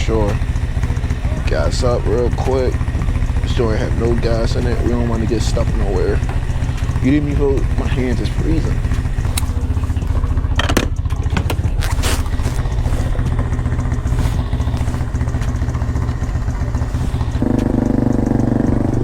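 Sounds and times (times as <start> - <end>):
higher engine note: 0.0 - 19.0
motorcycle engine idling: 0.0 - 19.0.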